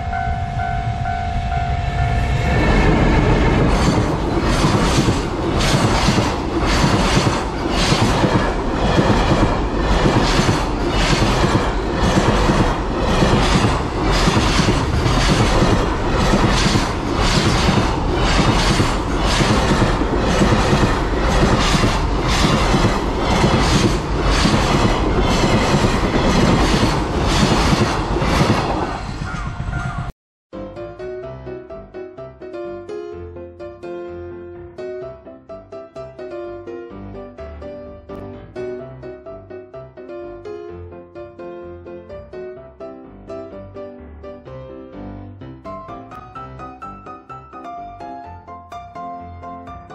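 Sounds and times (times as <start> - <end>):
train wheels clattering over rail joints: 2.7 - 29.6.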